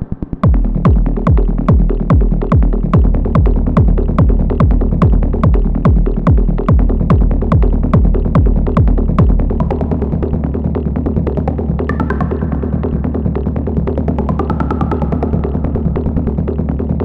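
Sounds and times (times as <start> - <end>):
droning bass: 0.0 - 17.0
kick drum: 0.4 - 9.8.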